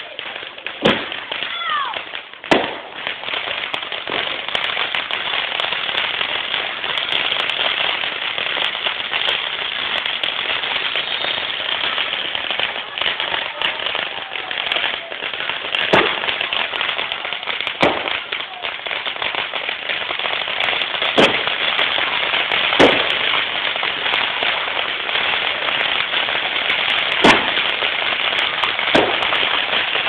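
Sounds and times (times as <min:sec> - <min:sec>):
fireworks crackling: 0:00.0 - 0:30.0
loud firework bang: 0:02.5 - 0:03.0, 0:21.1 - 0:21.5, 0:22.8 - 0:23.4, 0:27.2 - 0:27.6, 0:28.9 - 0:29.7.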